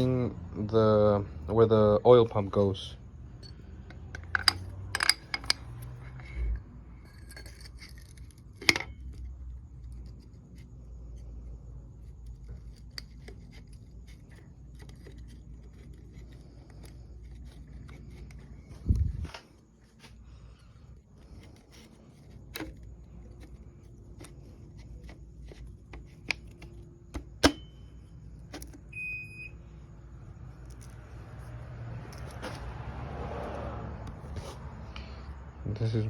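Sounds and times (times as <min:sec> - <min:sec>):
metallic clicks of engine parts: 0:03.4 - 0:09.2.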